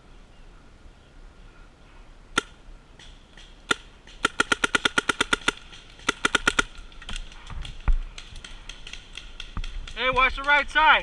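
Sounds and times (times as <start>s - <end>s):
paintball marker firing: 2.4s - 10.6s.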